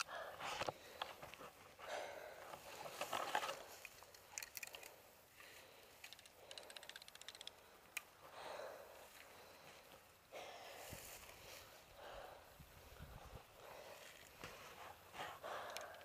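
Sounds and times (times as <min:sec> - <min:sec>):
scattered clicks: 0:02.5 - 0:05.0, 0:06.0 - 0:08.1, 0:15.6 - 0:16.0
fast rattle of clicks: 0:03.0 - 0:05.0, 0:06.0 - 0:08.1.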